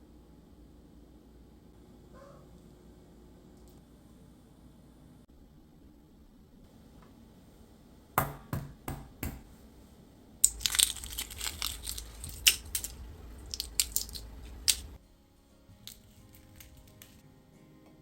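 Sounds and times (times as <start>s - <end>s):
packaging crinkling and snapping: 10.4s - 15.0s, 15.9s - 17.2s.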